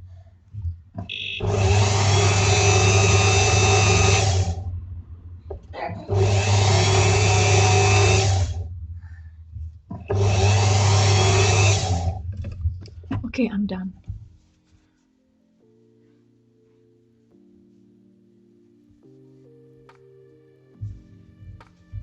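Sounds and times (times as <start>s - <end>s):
rotary power tool spinning: 1.0s - 4.8s, 5.5s - 8.9s, 9.5s - 13.0s.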